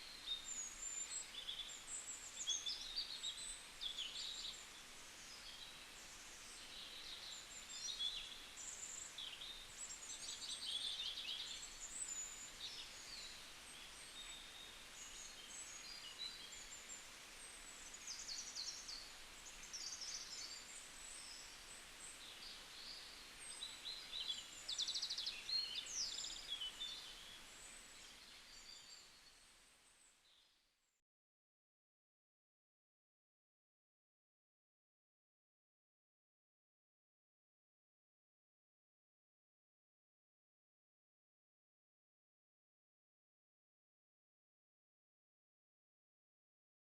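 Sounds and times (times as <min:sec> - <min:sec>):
small birds chirping: 0:00.0 - 0:30.6
faint steady hiss: 0:00.0 - 0:31.0.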